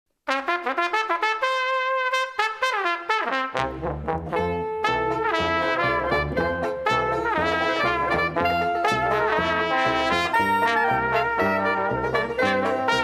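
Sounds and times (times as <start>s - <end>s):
jazz trumpet and trombone: 0.3s - 13.0s
steady beat: 4.2s - 13.0s.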